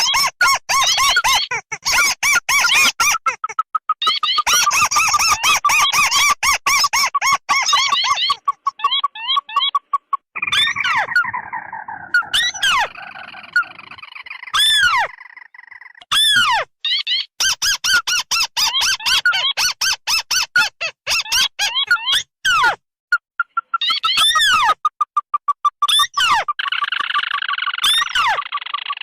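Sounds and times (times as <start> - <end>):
crake calls: 0.0 - 16.5, 23.4 - 29.0
downward-sweeping bird calls: 4.0 - 16.0.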